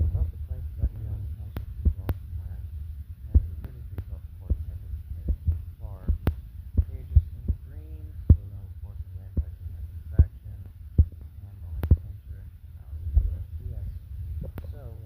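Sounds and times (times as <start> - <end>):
faint pitched sounds: 0.0 - 15.0
low steady hum: 0.0 - 15.0
sharp clicks: 10.6 - 12.1.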